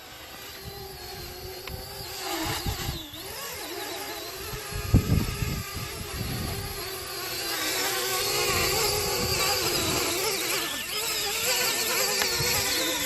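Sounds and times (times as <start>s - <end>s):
drone propellers whining: 0.0s - 13.0s
wind buffeting microphone: 0.6s - 3.4s, 4.4s - 7.1s, 8.2s - 10.2s.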